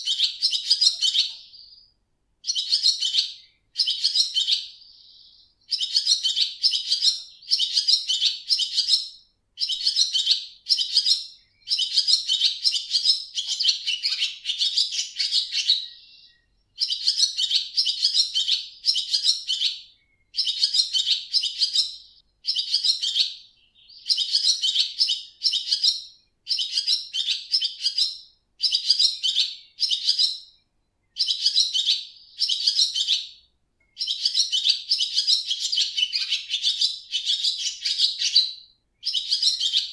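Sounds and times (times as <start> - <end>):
swallow twittering: 0.0 - 9.0.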